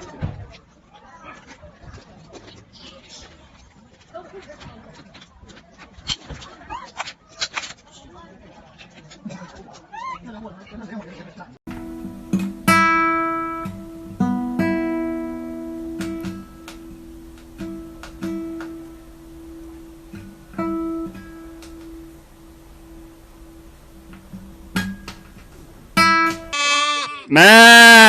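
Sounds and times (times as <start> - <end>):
acoustic guitar strummed chords: 11.7 - 26.6.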